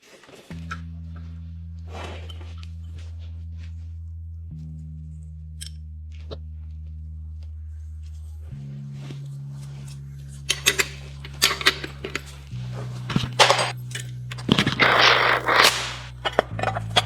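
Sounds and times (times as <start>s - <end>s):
low synth background music: 0.5s - 15.2s
clicks and knocks of metal tools: 10.5s - 12.4s
loud hiss: 14.8s - 16.1s.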